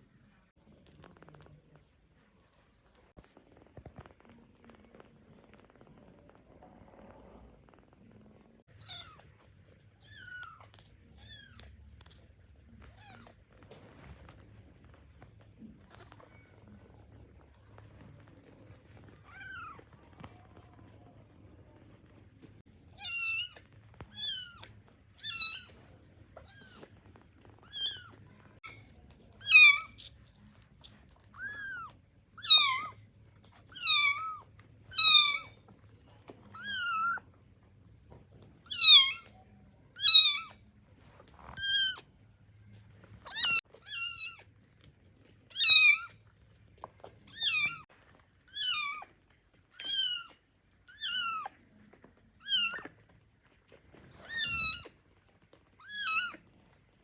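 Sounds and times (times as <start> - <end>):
kittens mewing: 23.0 - 24.6, 31.3 - 33.0, 33.6 - 35.6, 43.3 - 44.4, 49.8 - 51.5, 54.1 - 55.0.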